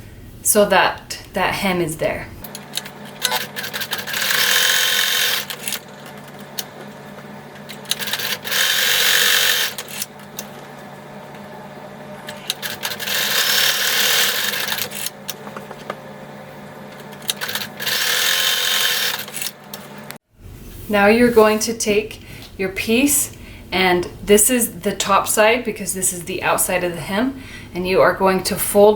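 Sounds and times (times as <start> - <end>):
sewing machine stitching: 2.5 - 6.6, 7.7 - 10.1, 12.3 - 15.4, 17.1 - 19.6.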